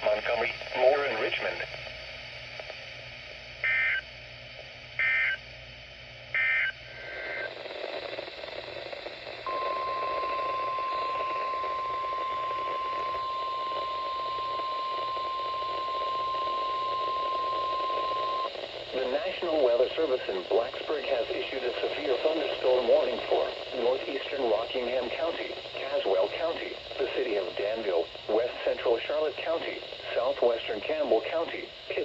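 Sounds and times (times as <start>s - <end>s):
receiver hiss: 0.0s - 32.0s
steady warning alarm tone: 3.6s - 4.1s, 5.0s - 5.4s, 6.4s - 7.5s, 9.4s - 20.4s
warbling data bursts: 6.4s - 32.0s.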